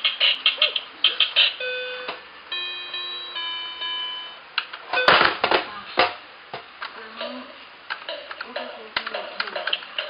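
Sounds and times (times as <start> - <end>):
toy keyboard synthesized notes: 0.0 - 4.2.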